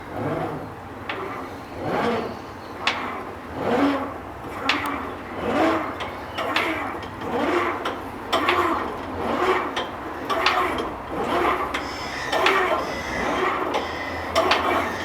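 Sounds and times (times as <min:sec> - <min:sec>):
swinging bell creaking and rubbing: 0:11.2 - 0:15.0.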